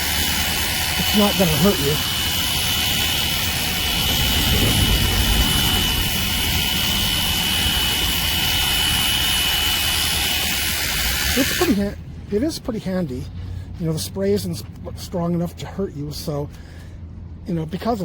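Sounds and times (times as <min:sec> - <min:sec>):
thin high whine: 0:00.0 - 0:10.2
pressure washer water jet hiss: 0:00.0 - 0:11.9.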